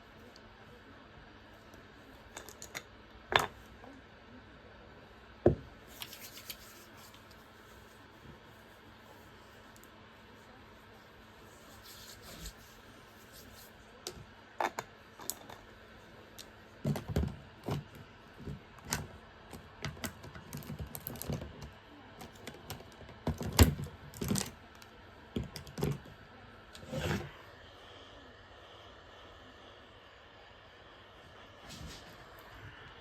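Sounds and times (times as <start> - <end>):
small objects clicking and knocking: 2.4 - 3.6.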